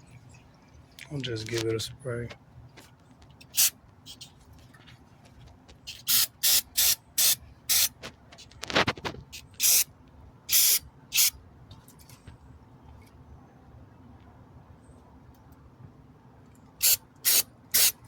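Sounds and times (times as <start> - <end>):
aerosol spray hissing: 5.9 - 7.9, 16.8 - 18.0.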